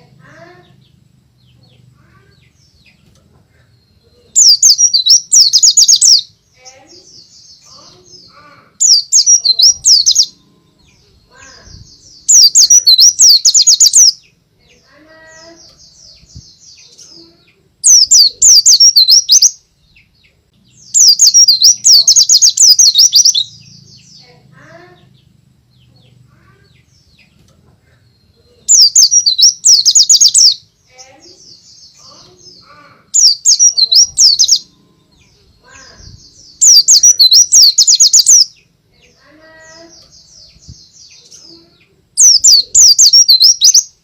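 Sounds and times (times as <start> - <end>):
bird twittering: 4.4 - 6.3, 8.2 - 14.3, 17.8 - 19.6, 20.9 - 24.2, 28.7 - 30.7, 31.4 - 41.5, 42.2 - 44.0.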